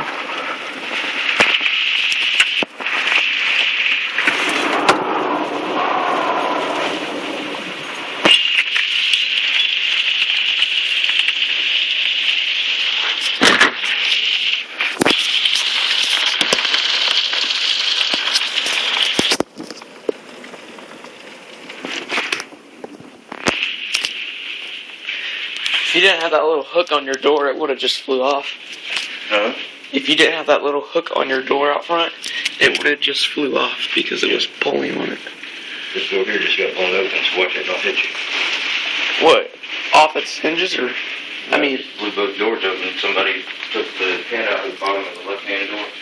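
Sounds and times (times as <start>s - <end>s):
sharp knocks and crackles: 0.0s - 24.8s
wind: 0.0s - 25.8s
heavy rain: 0.0s - 26.7s, 28.4s - 46.0s.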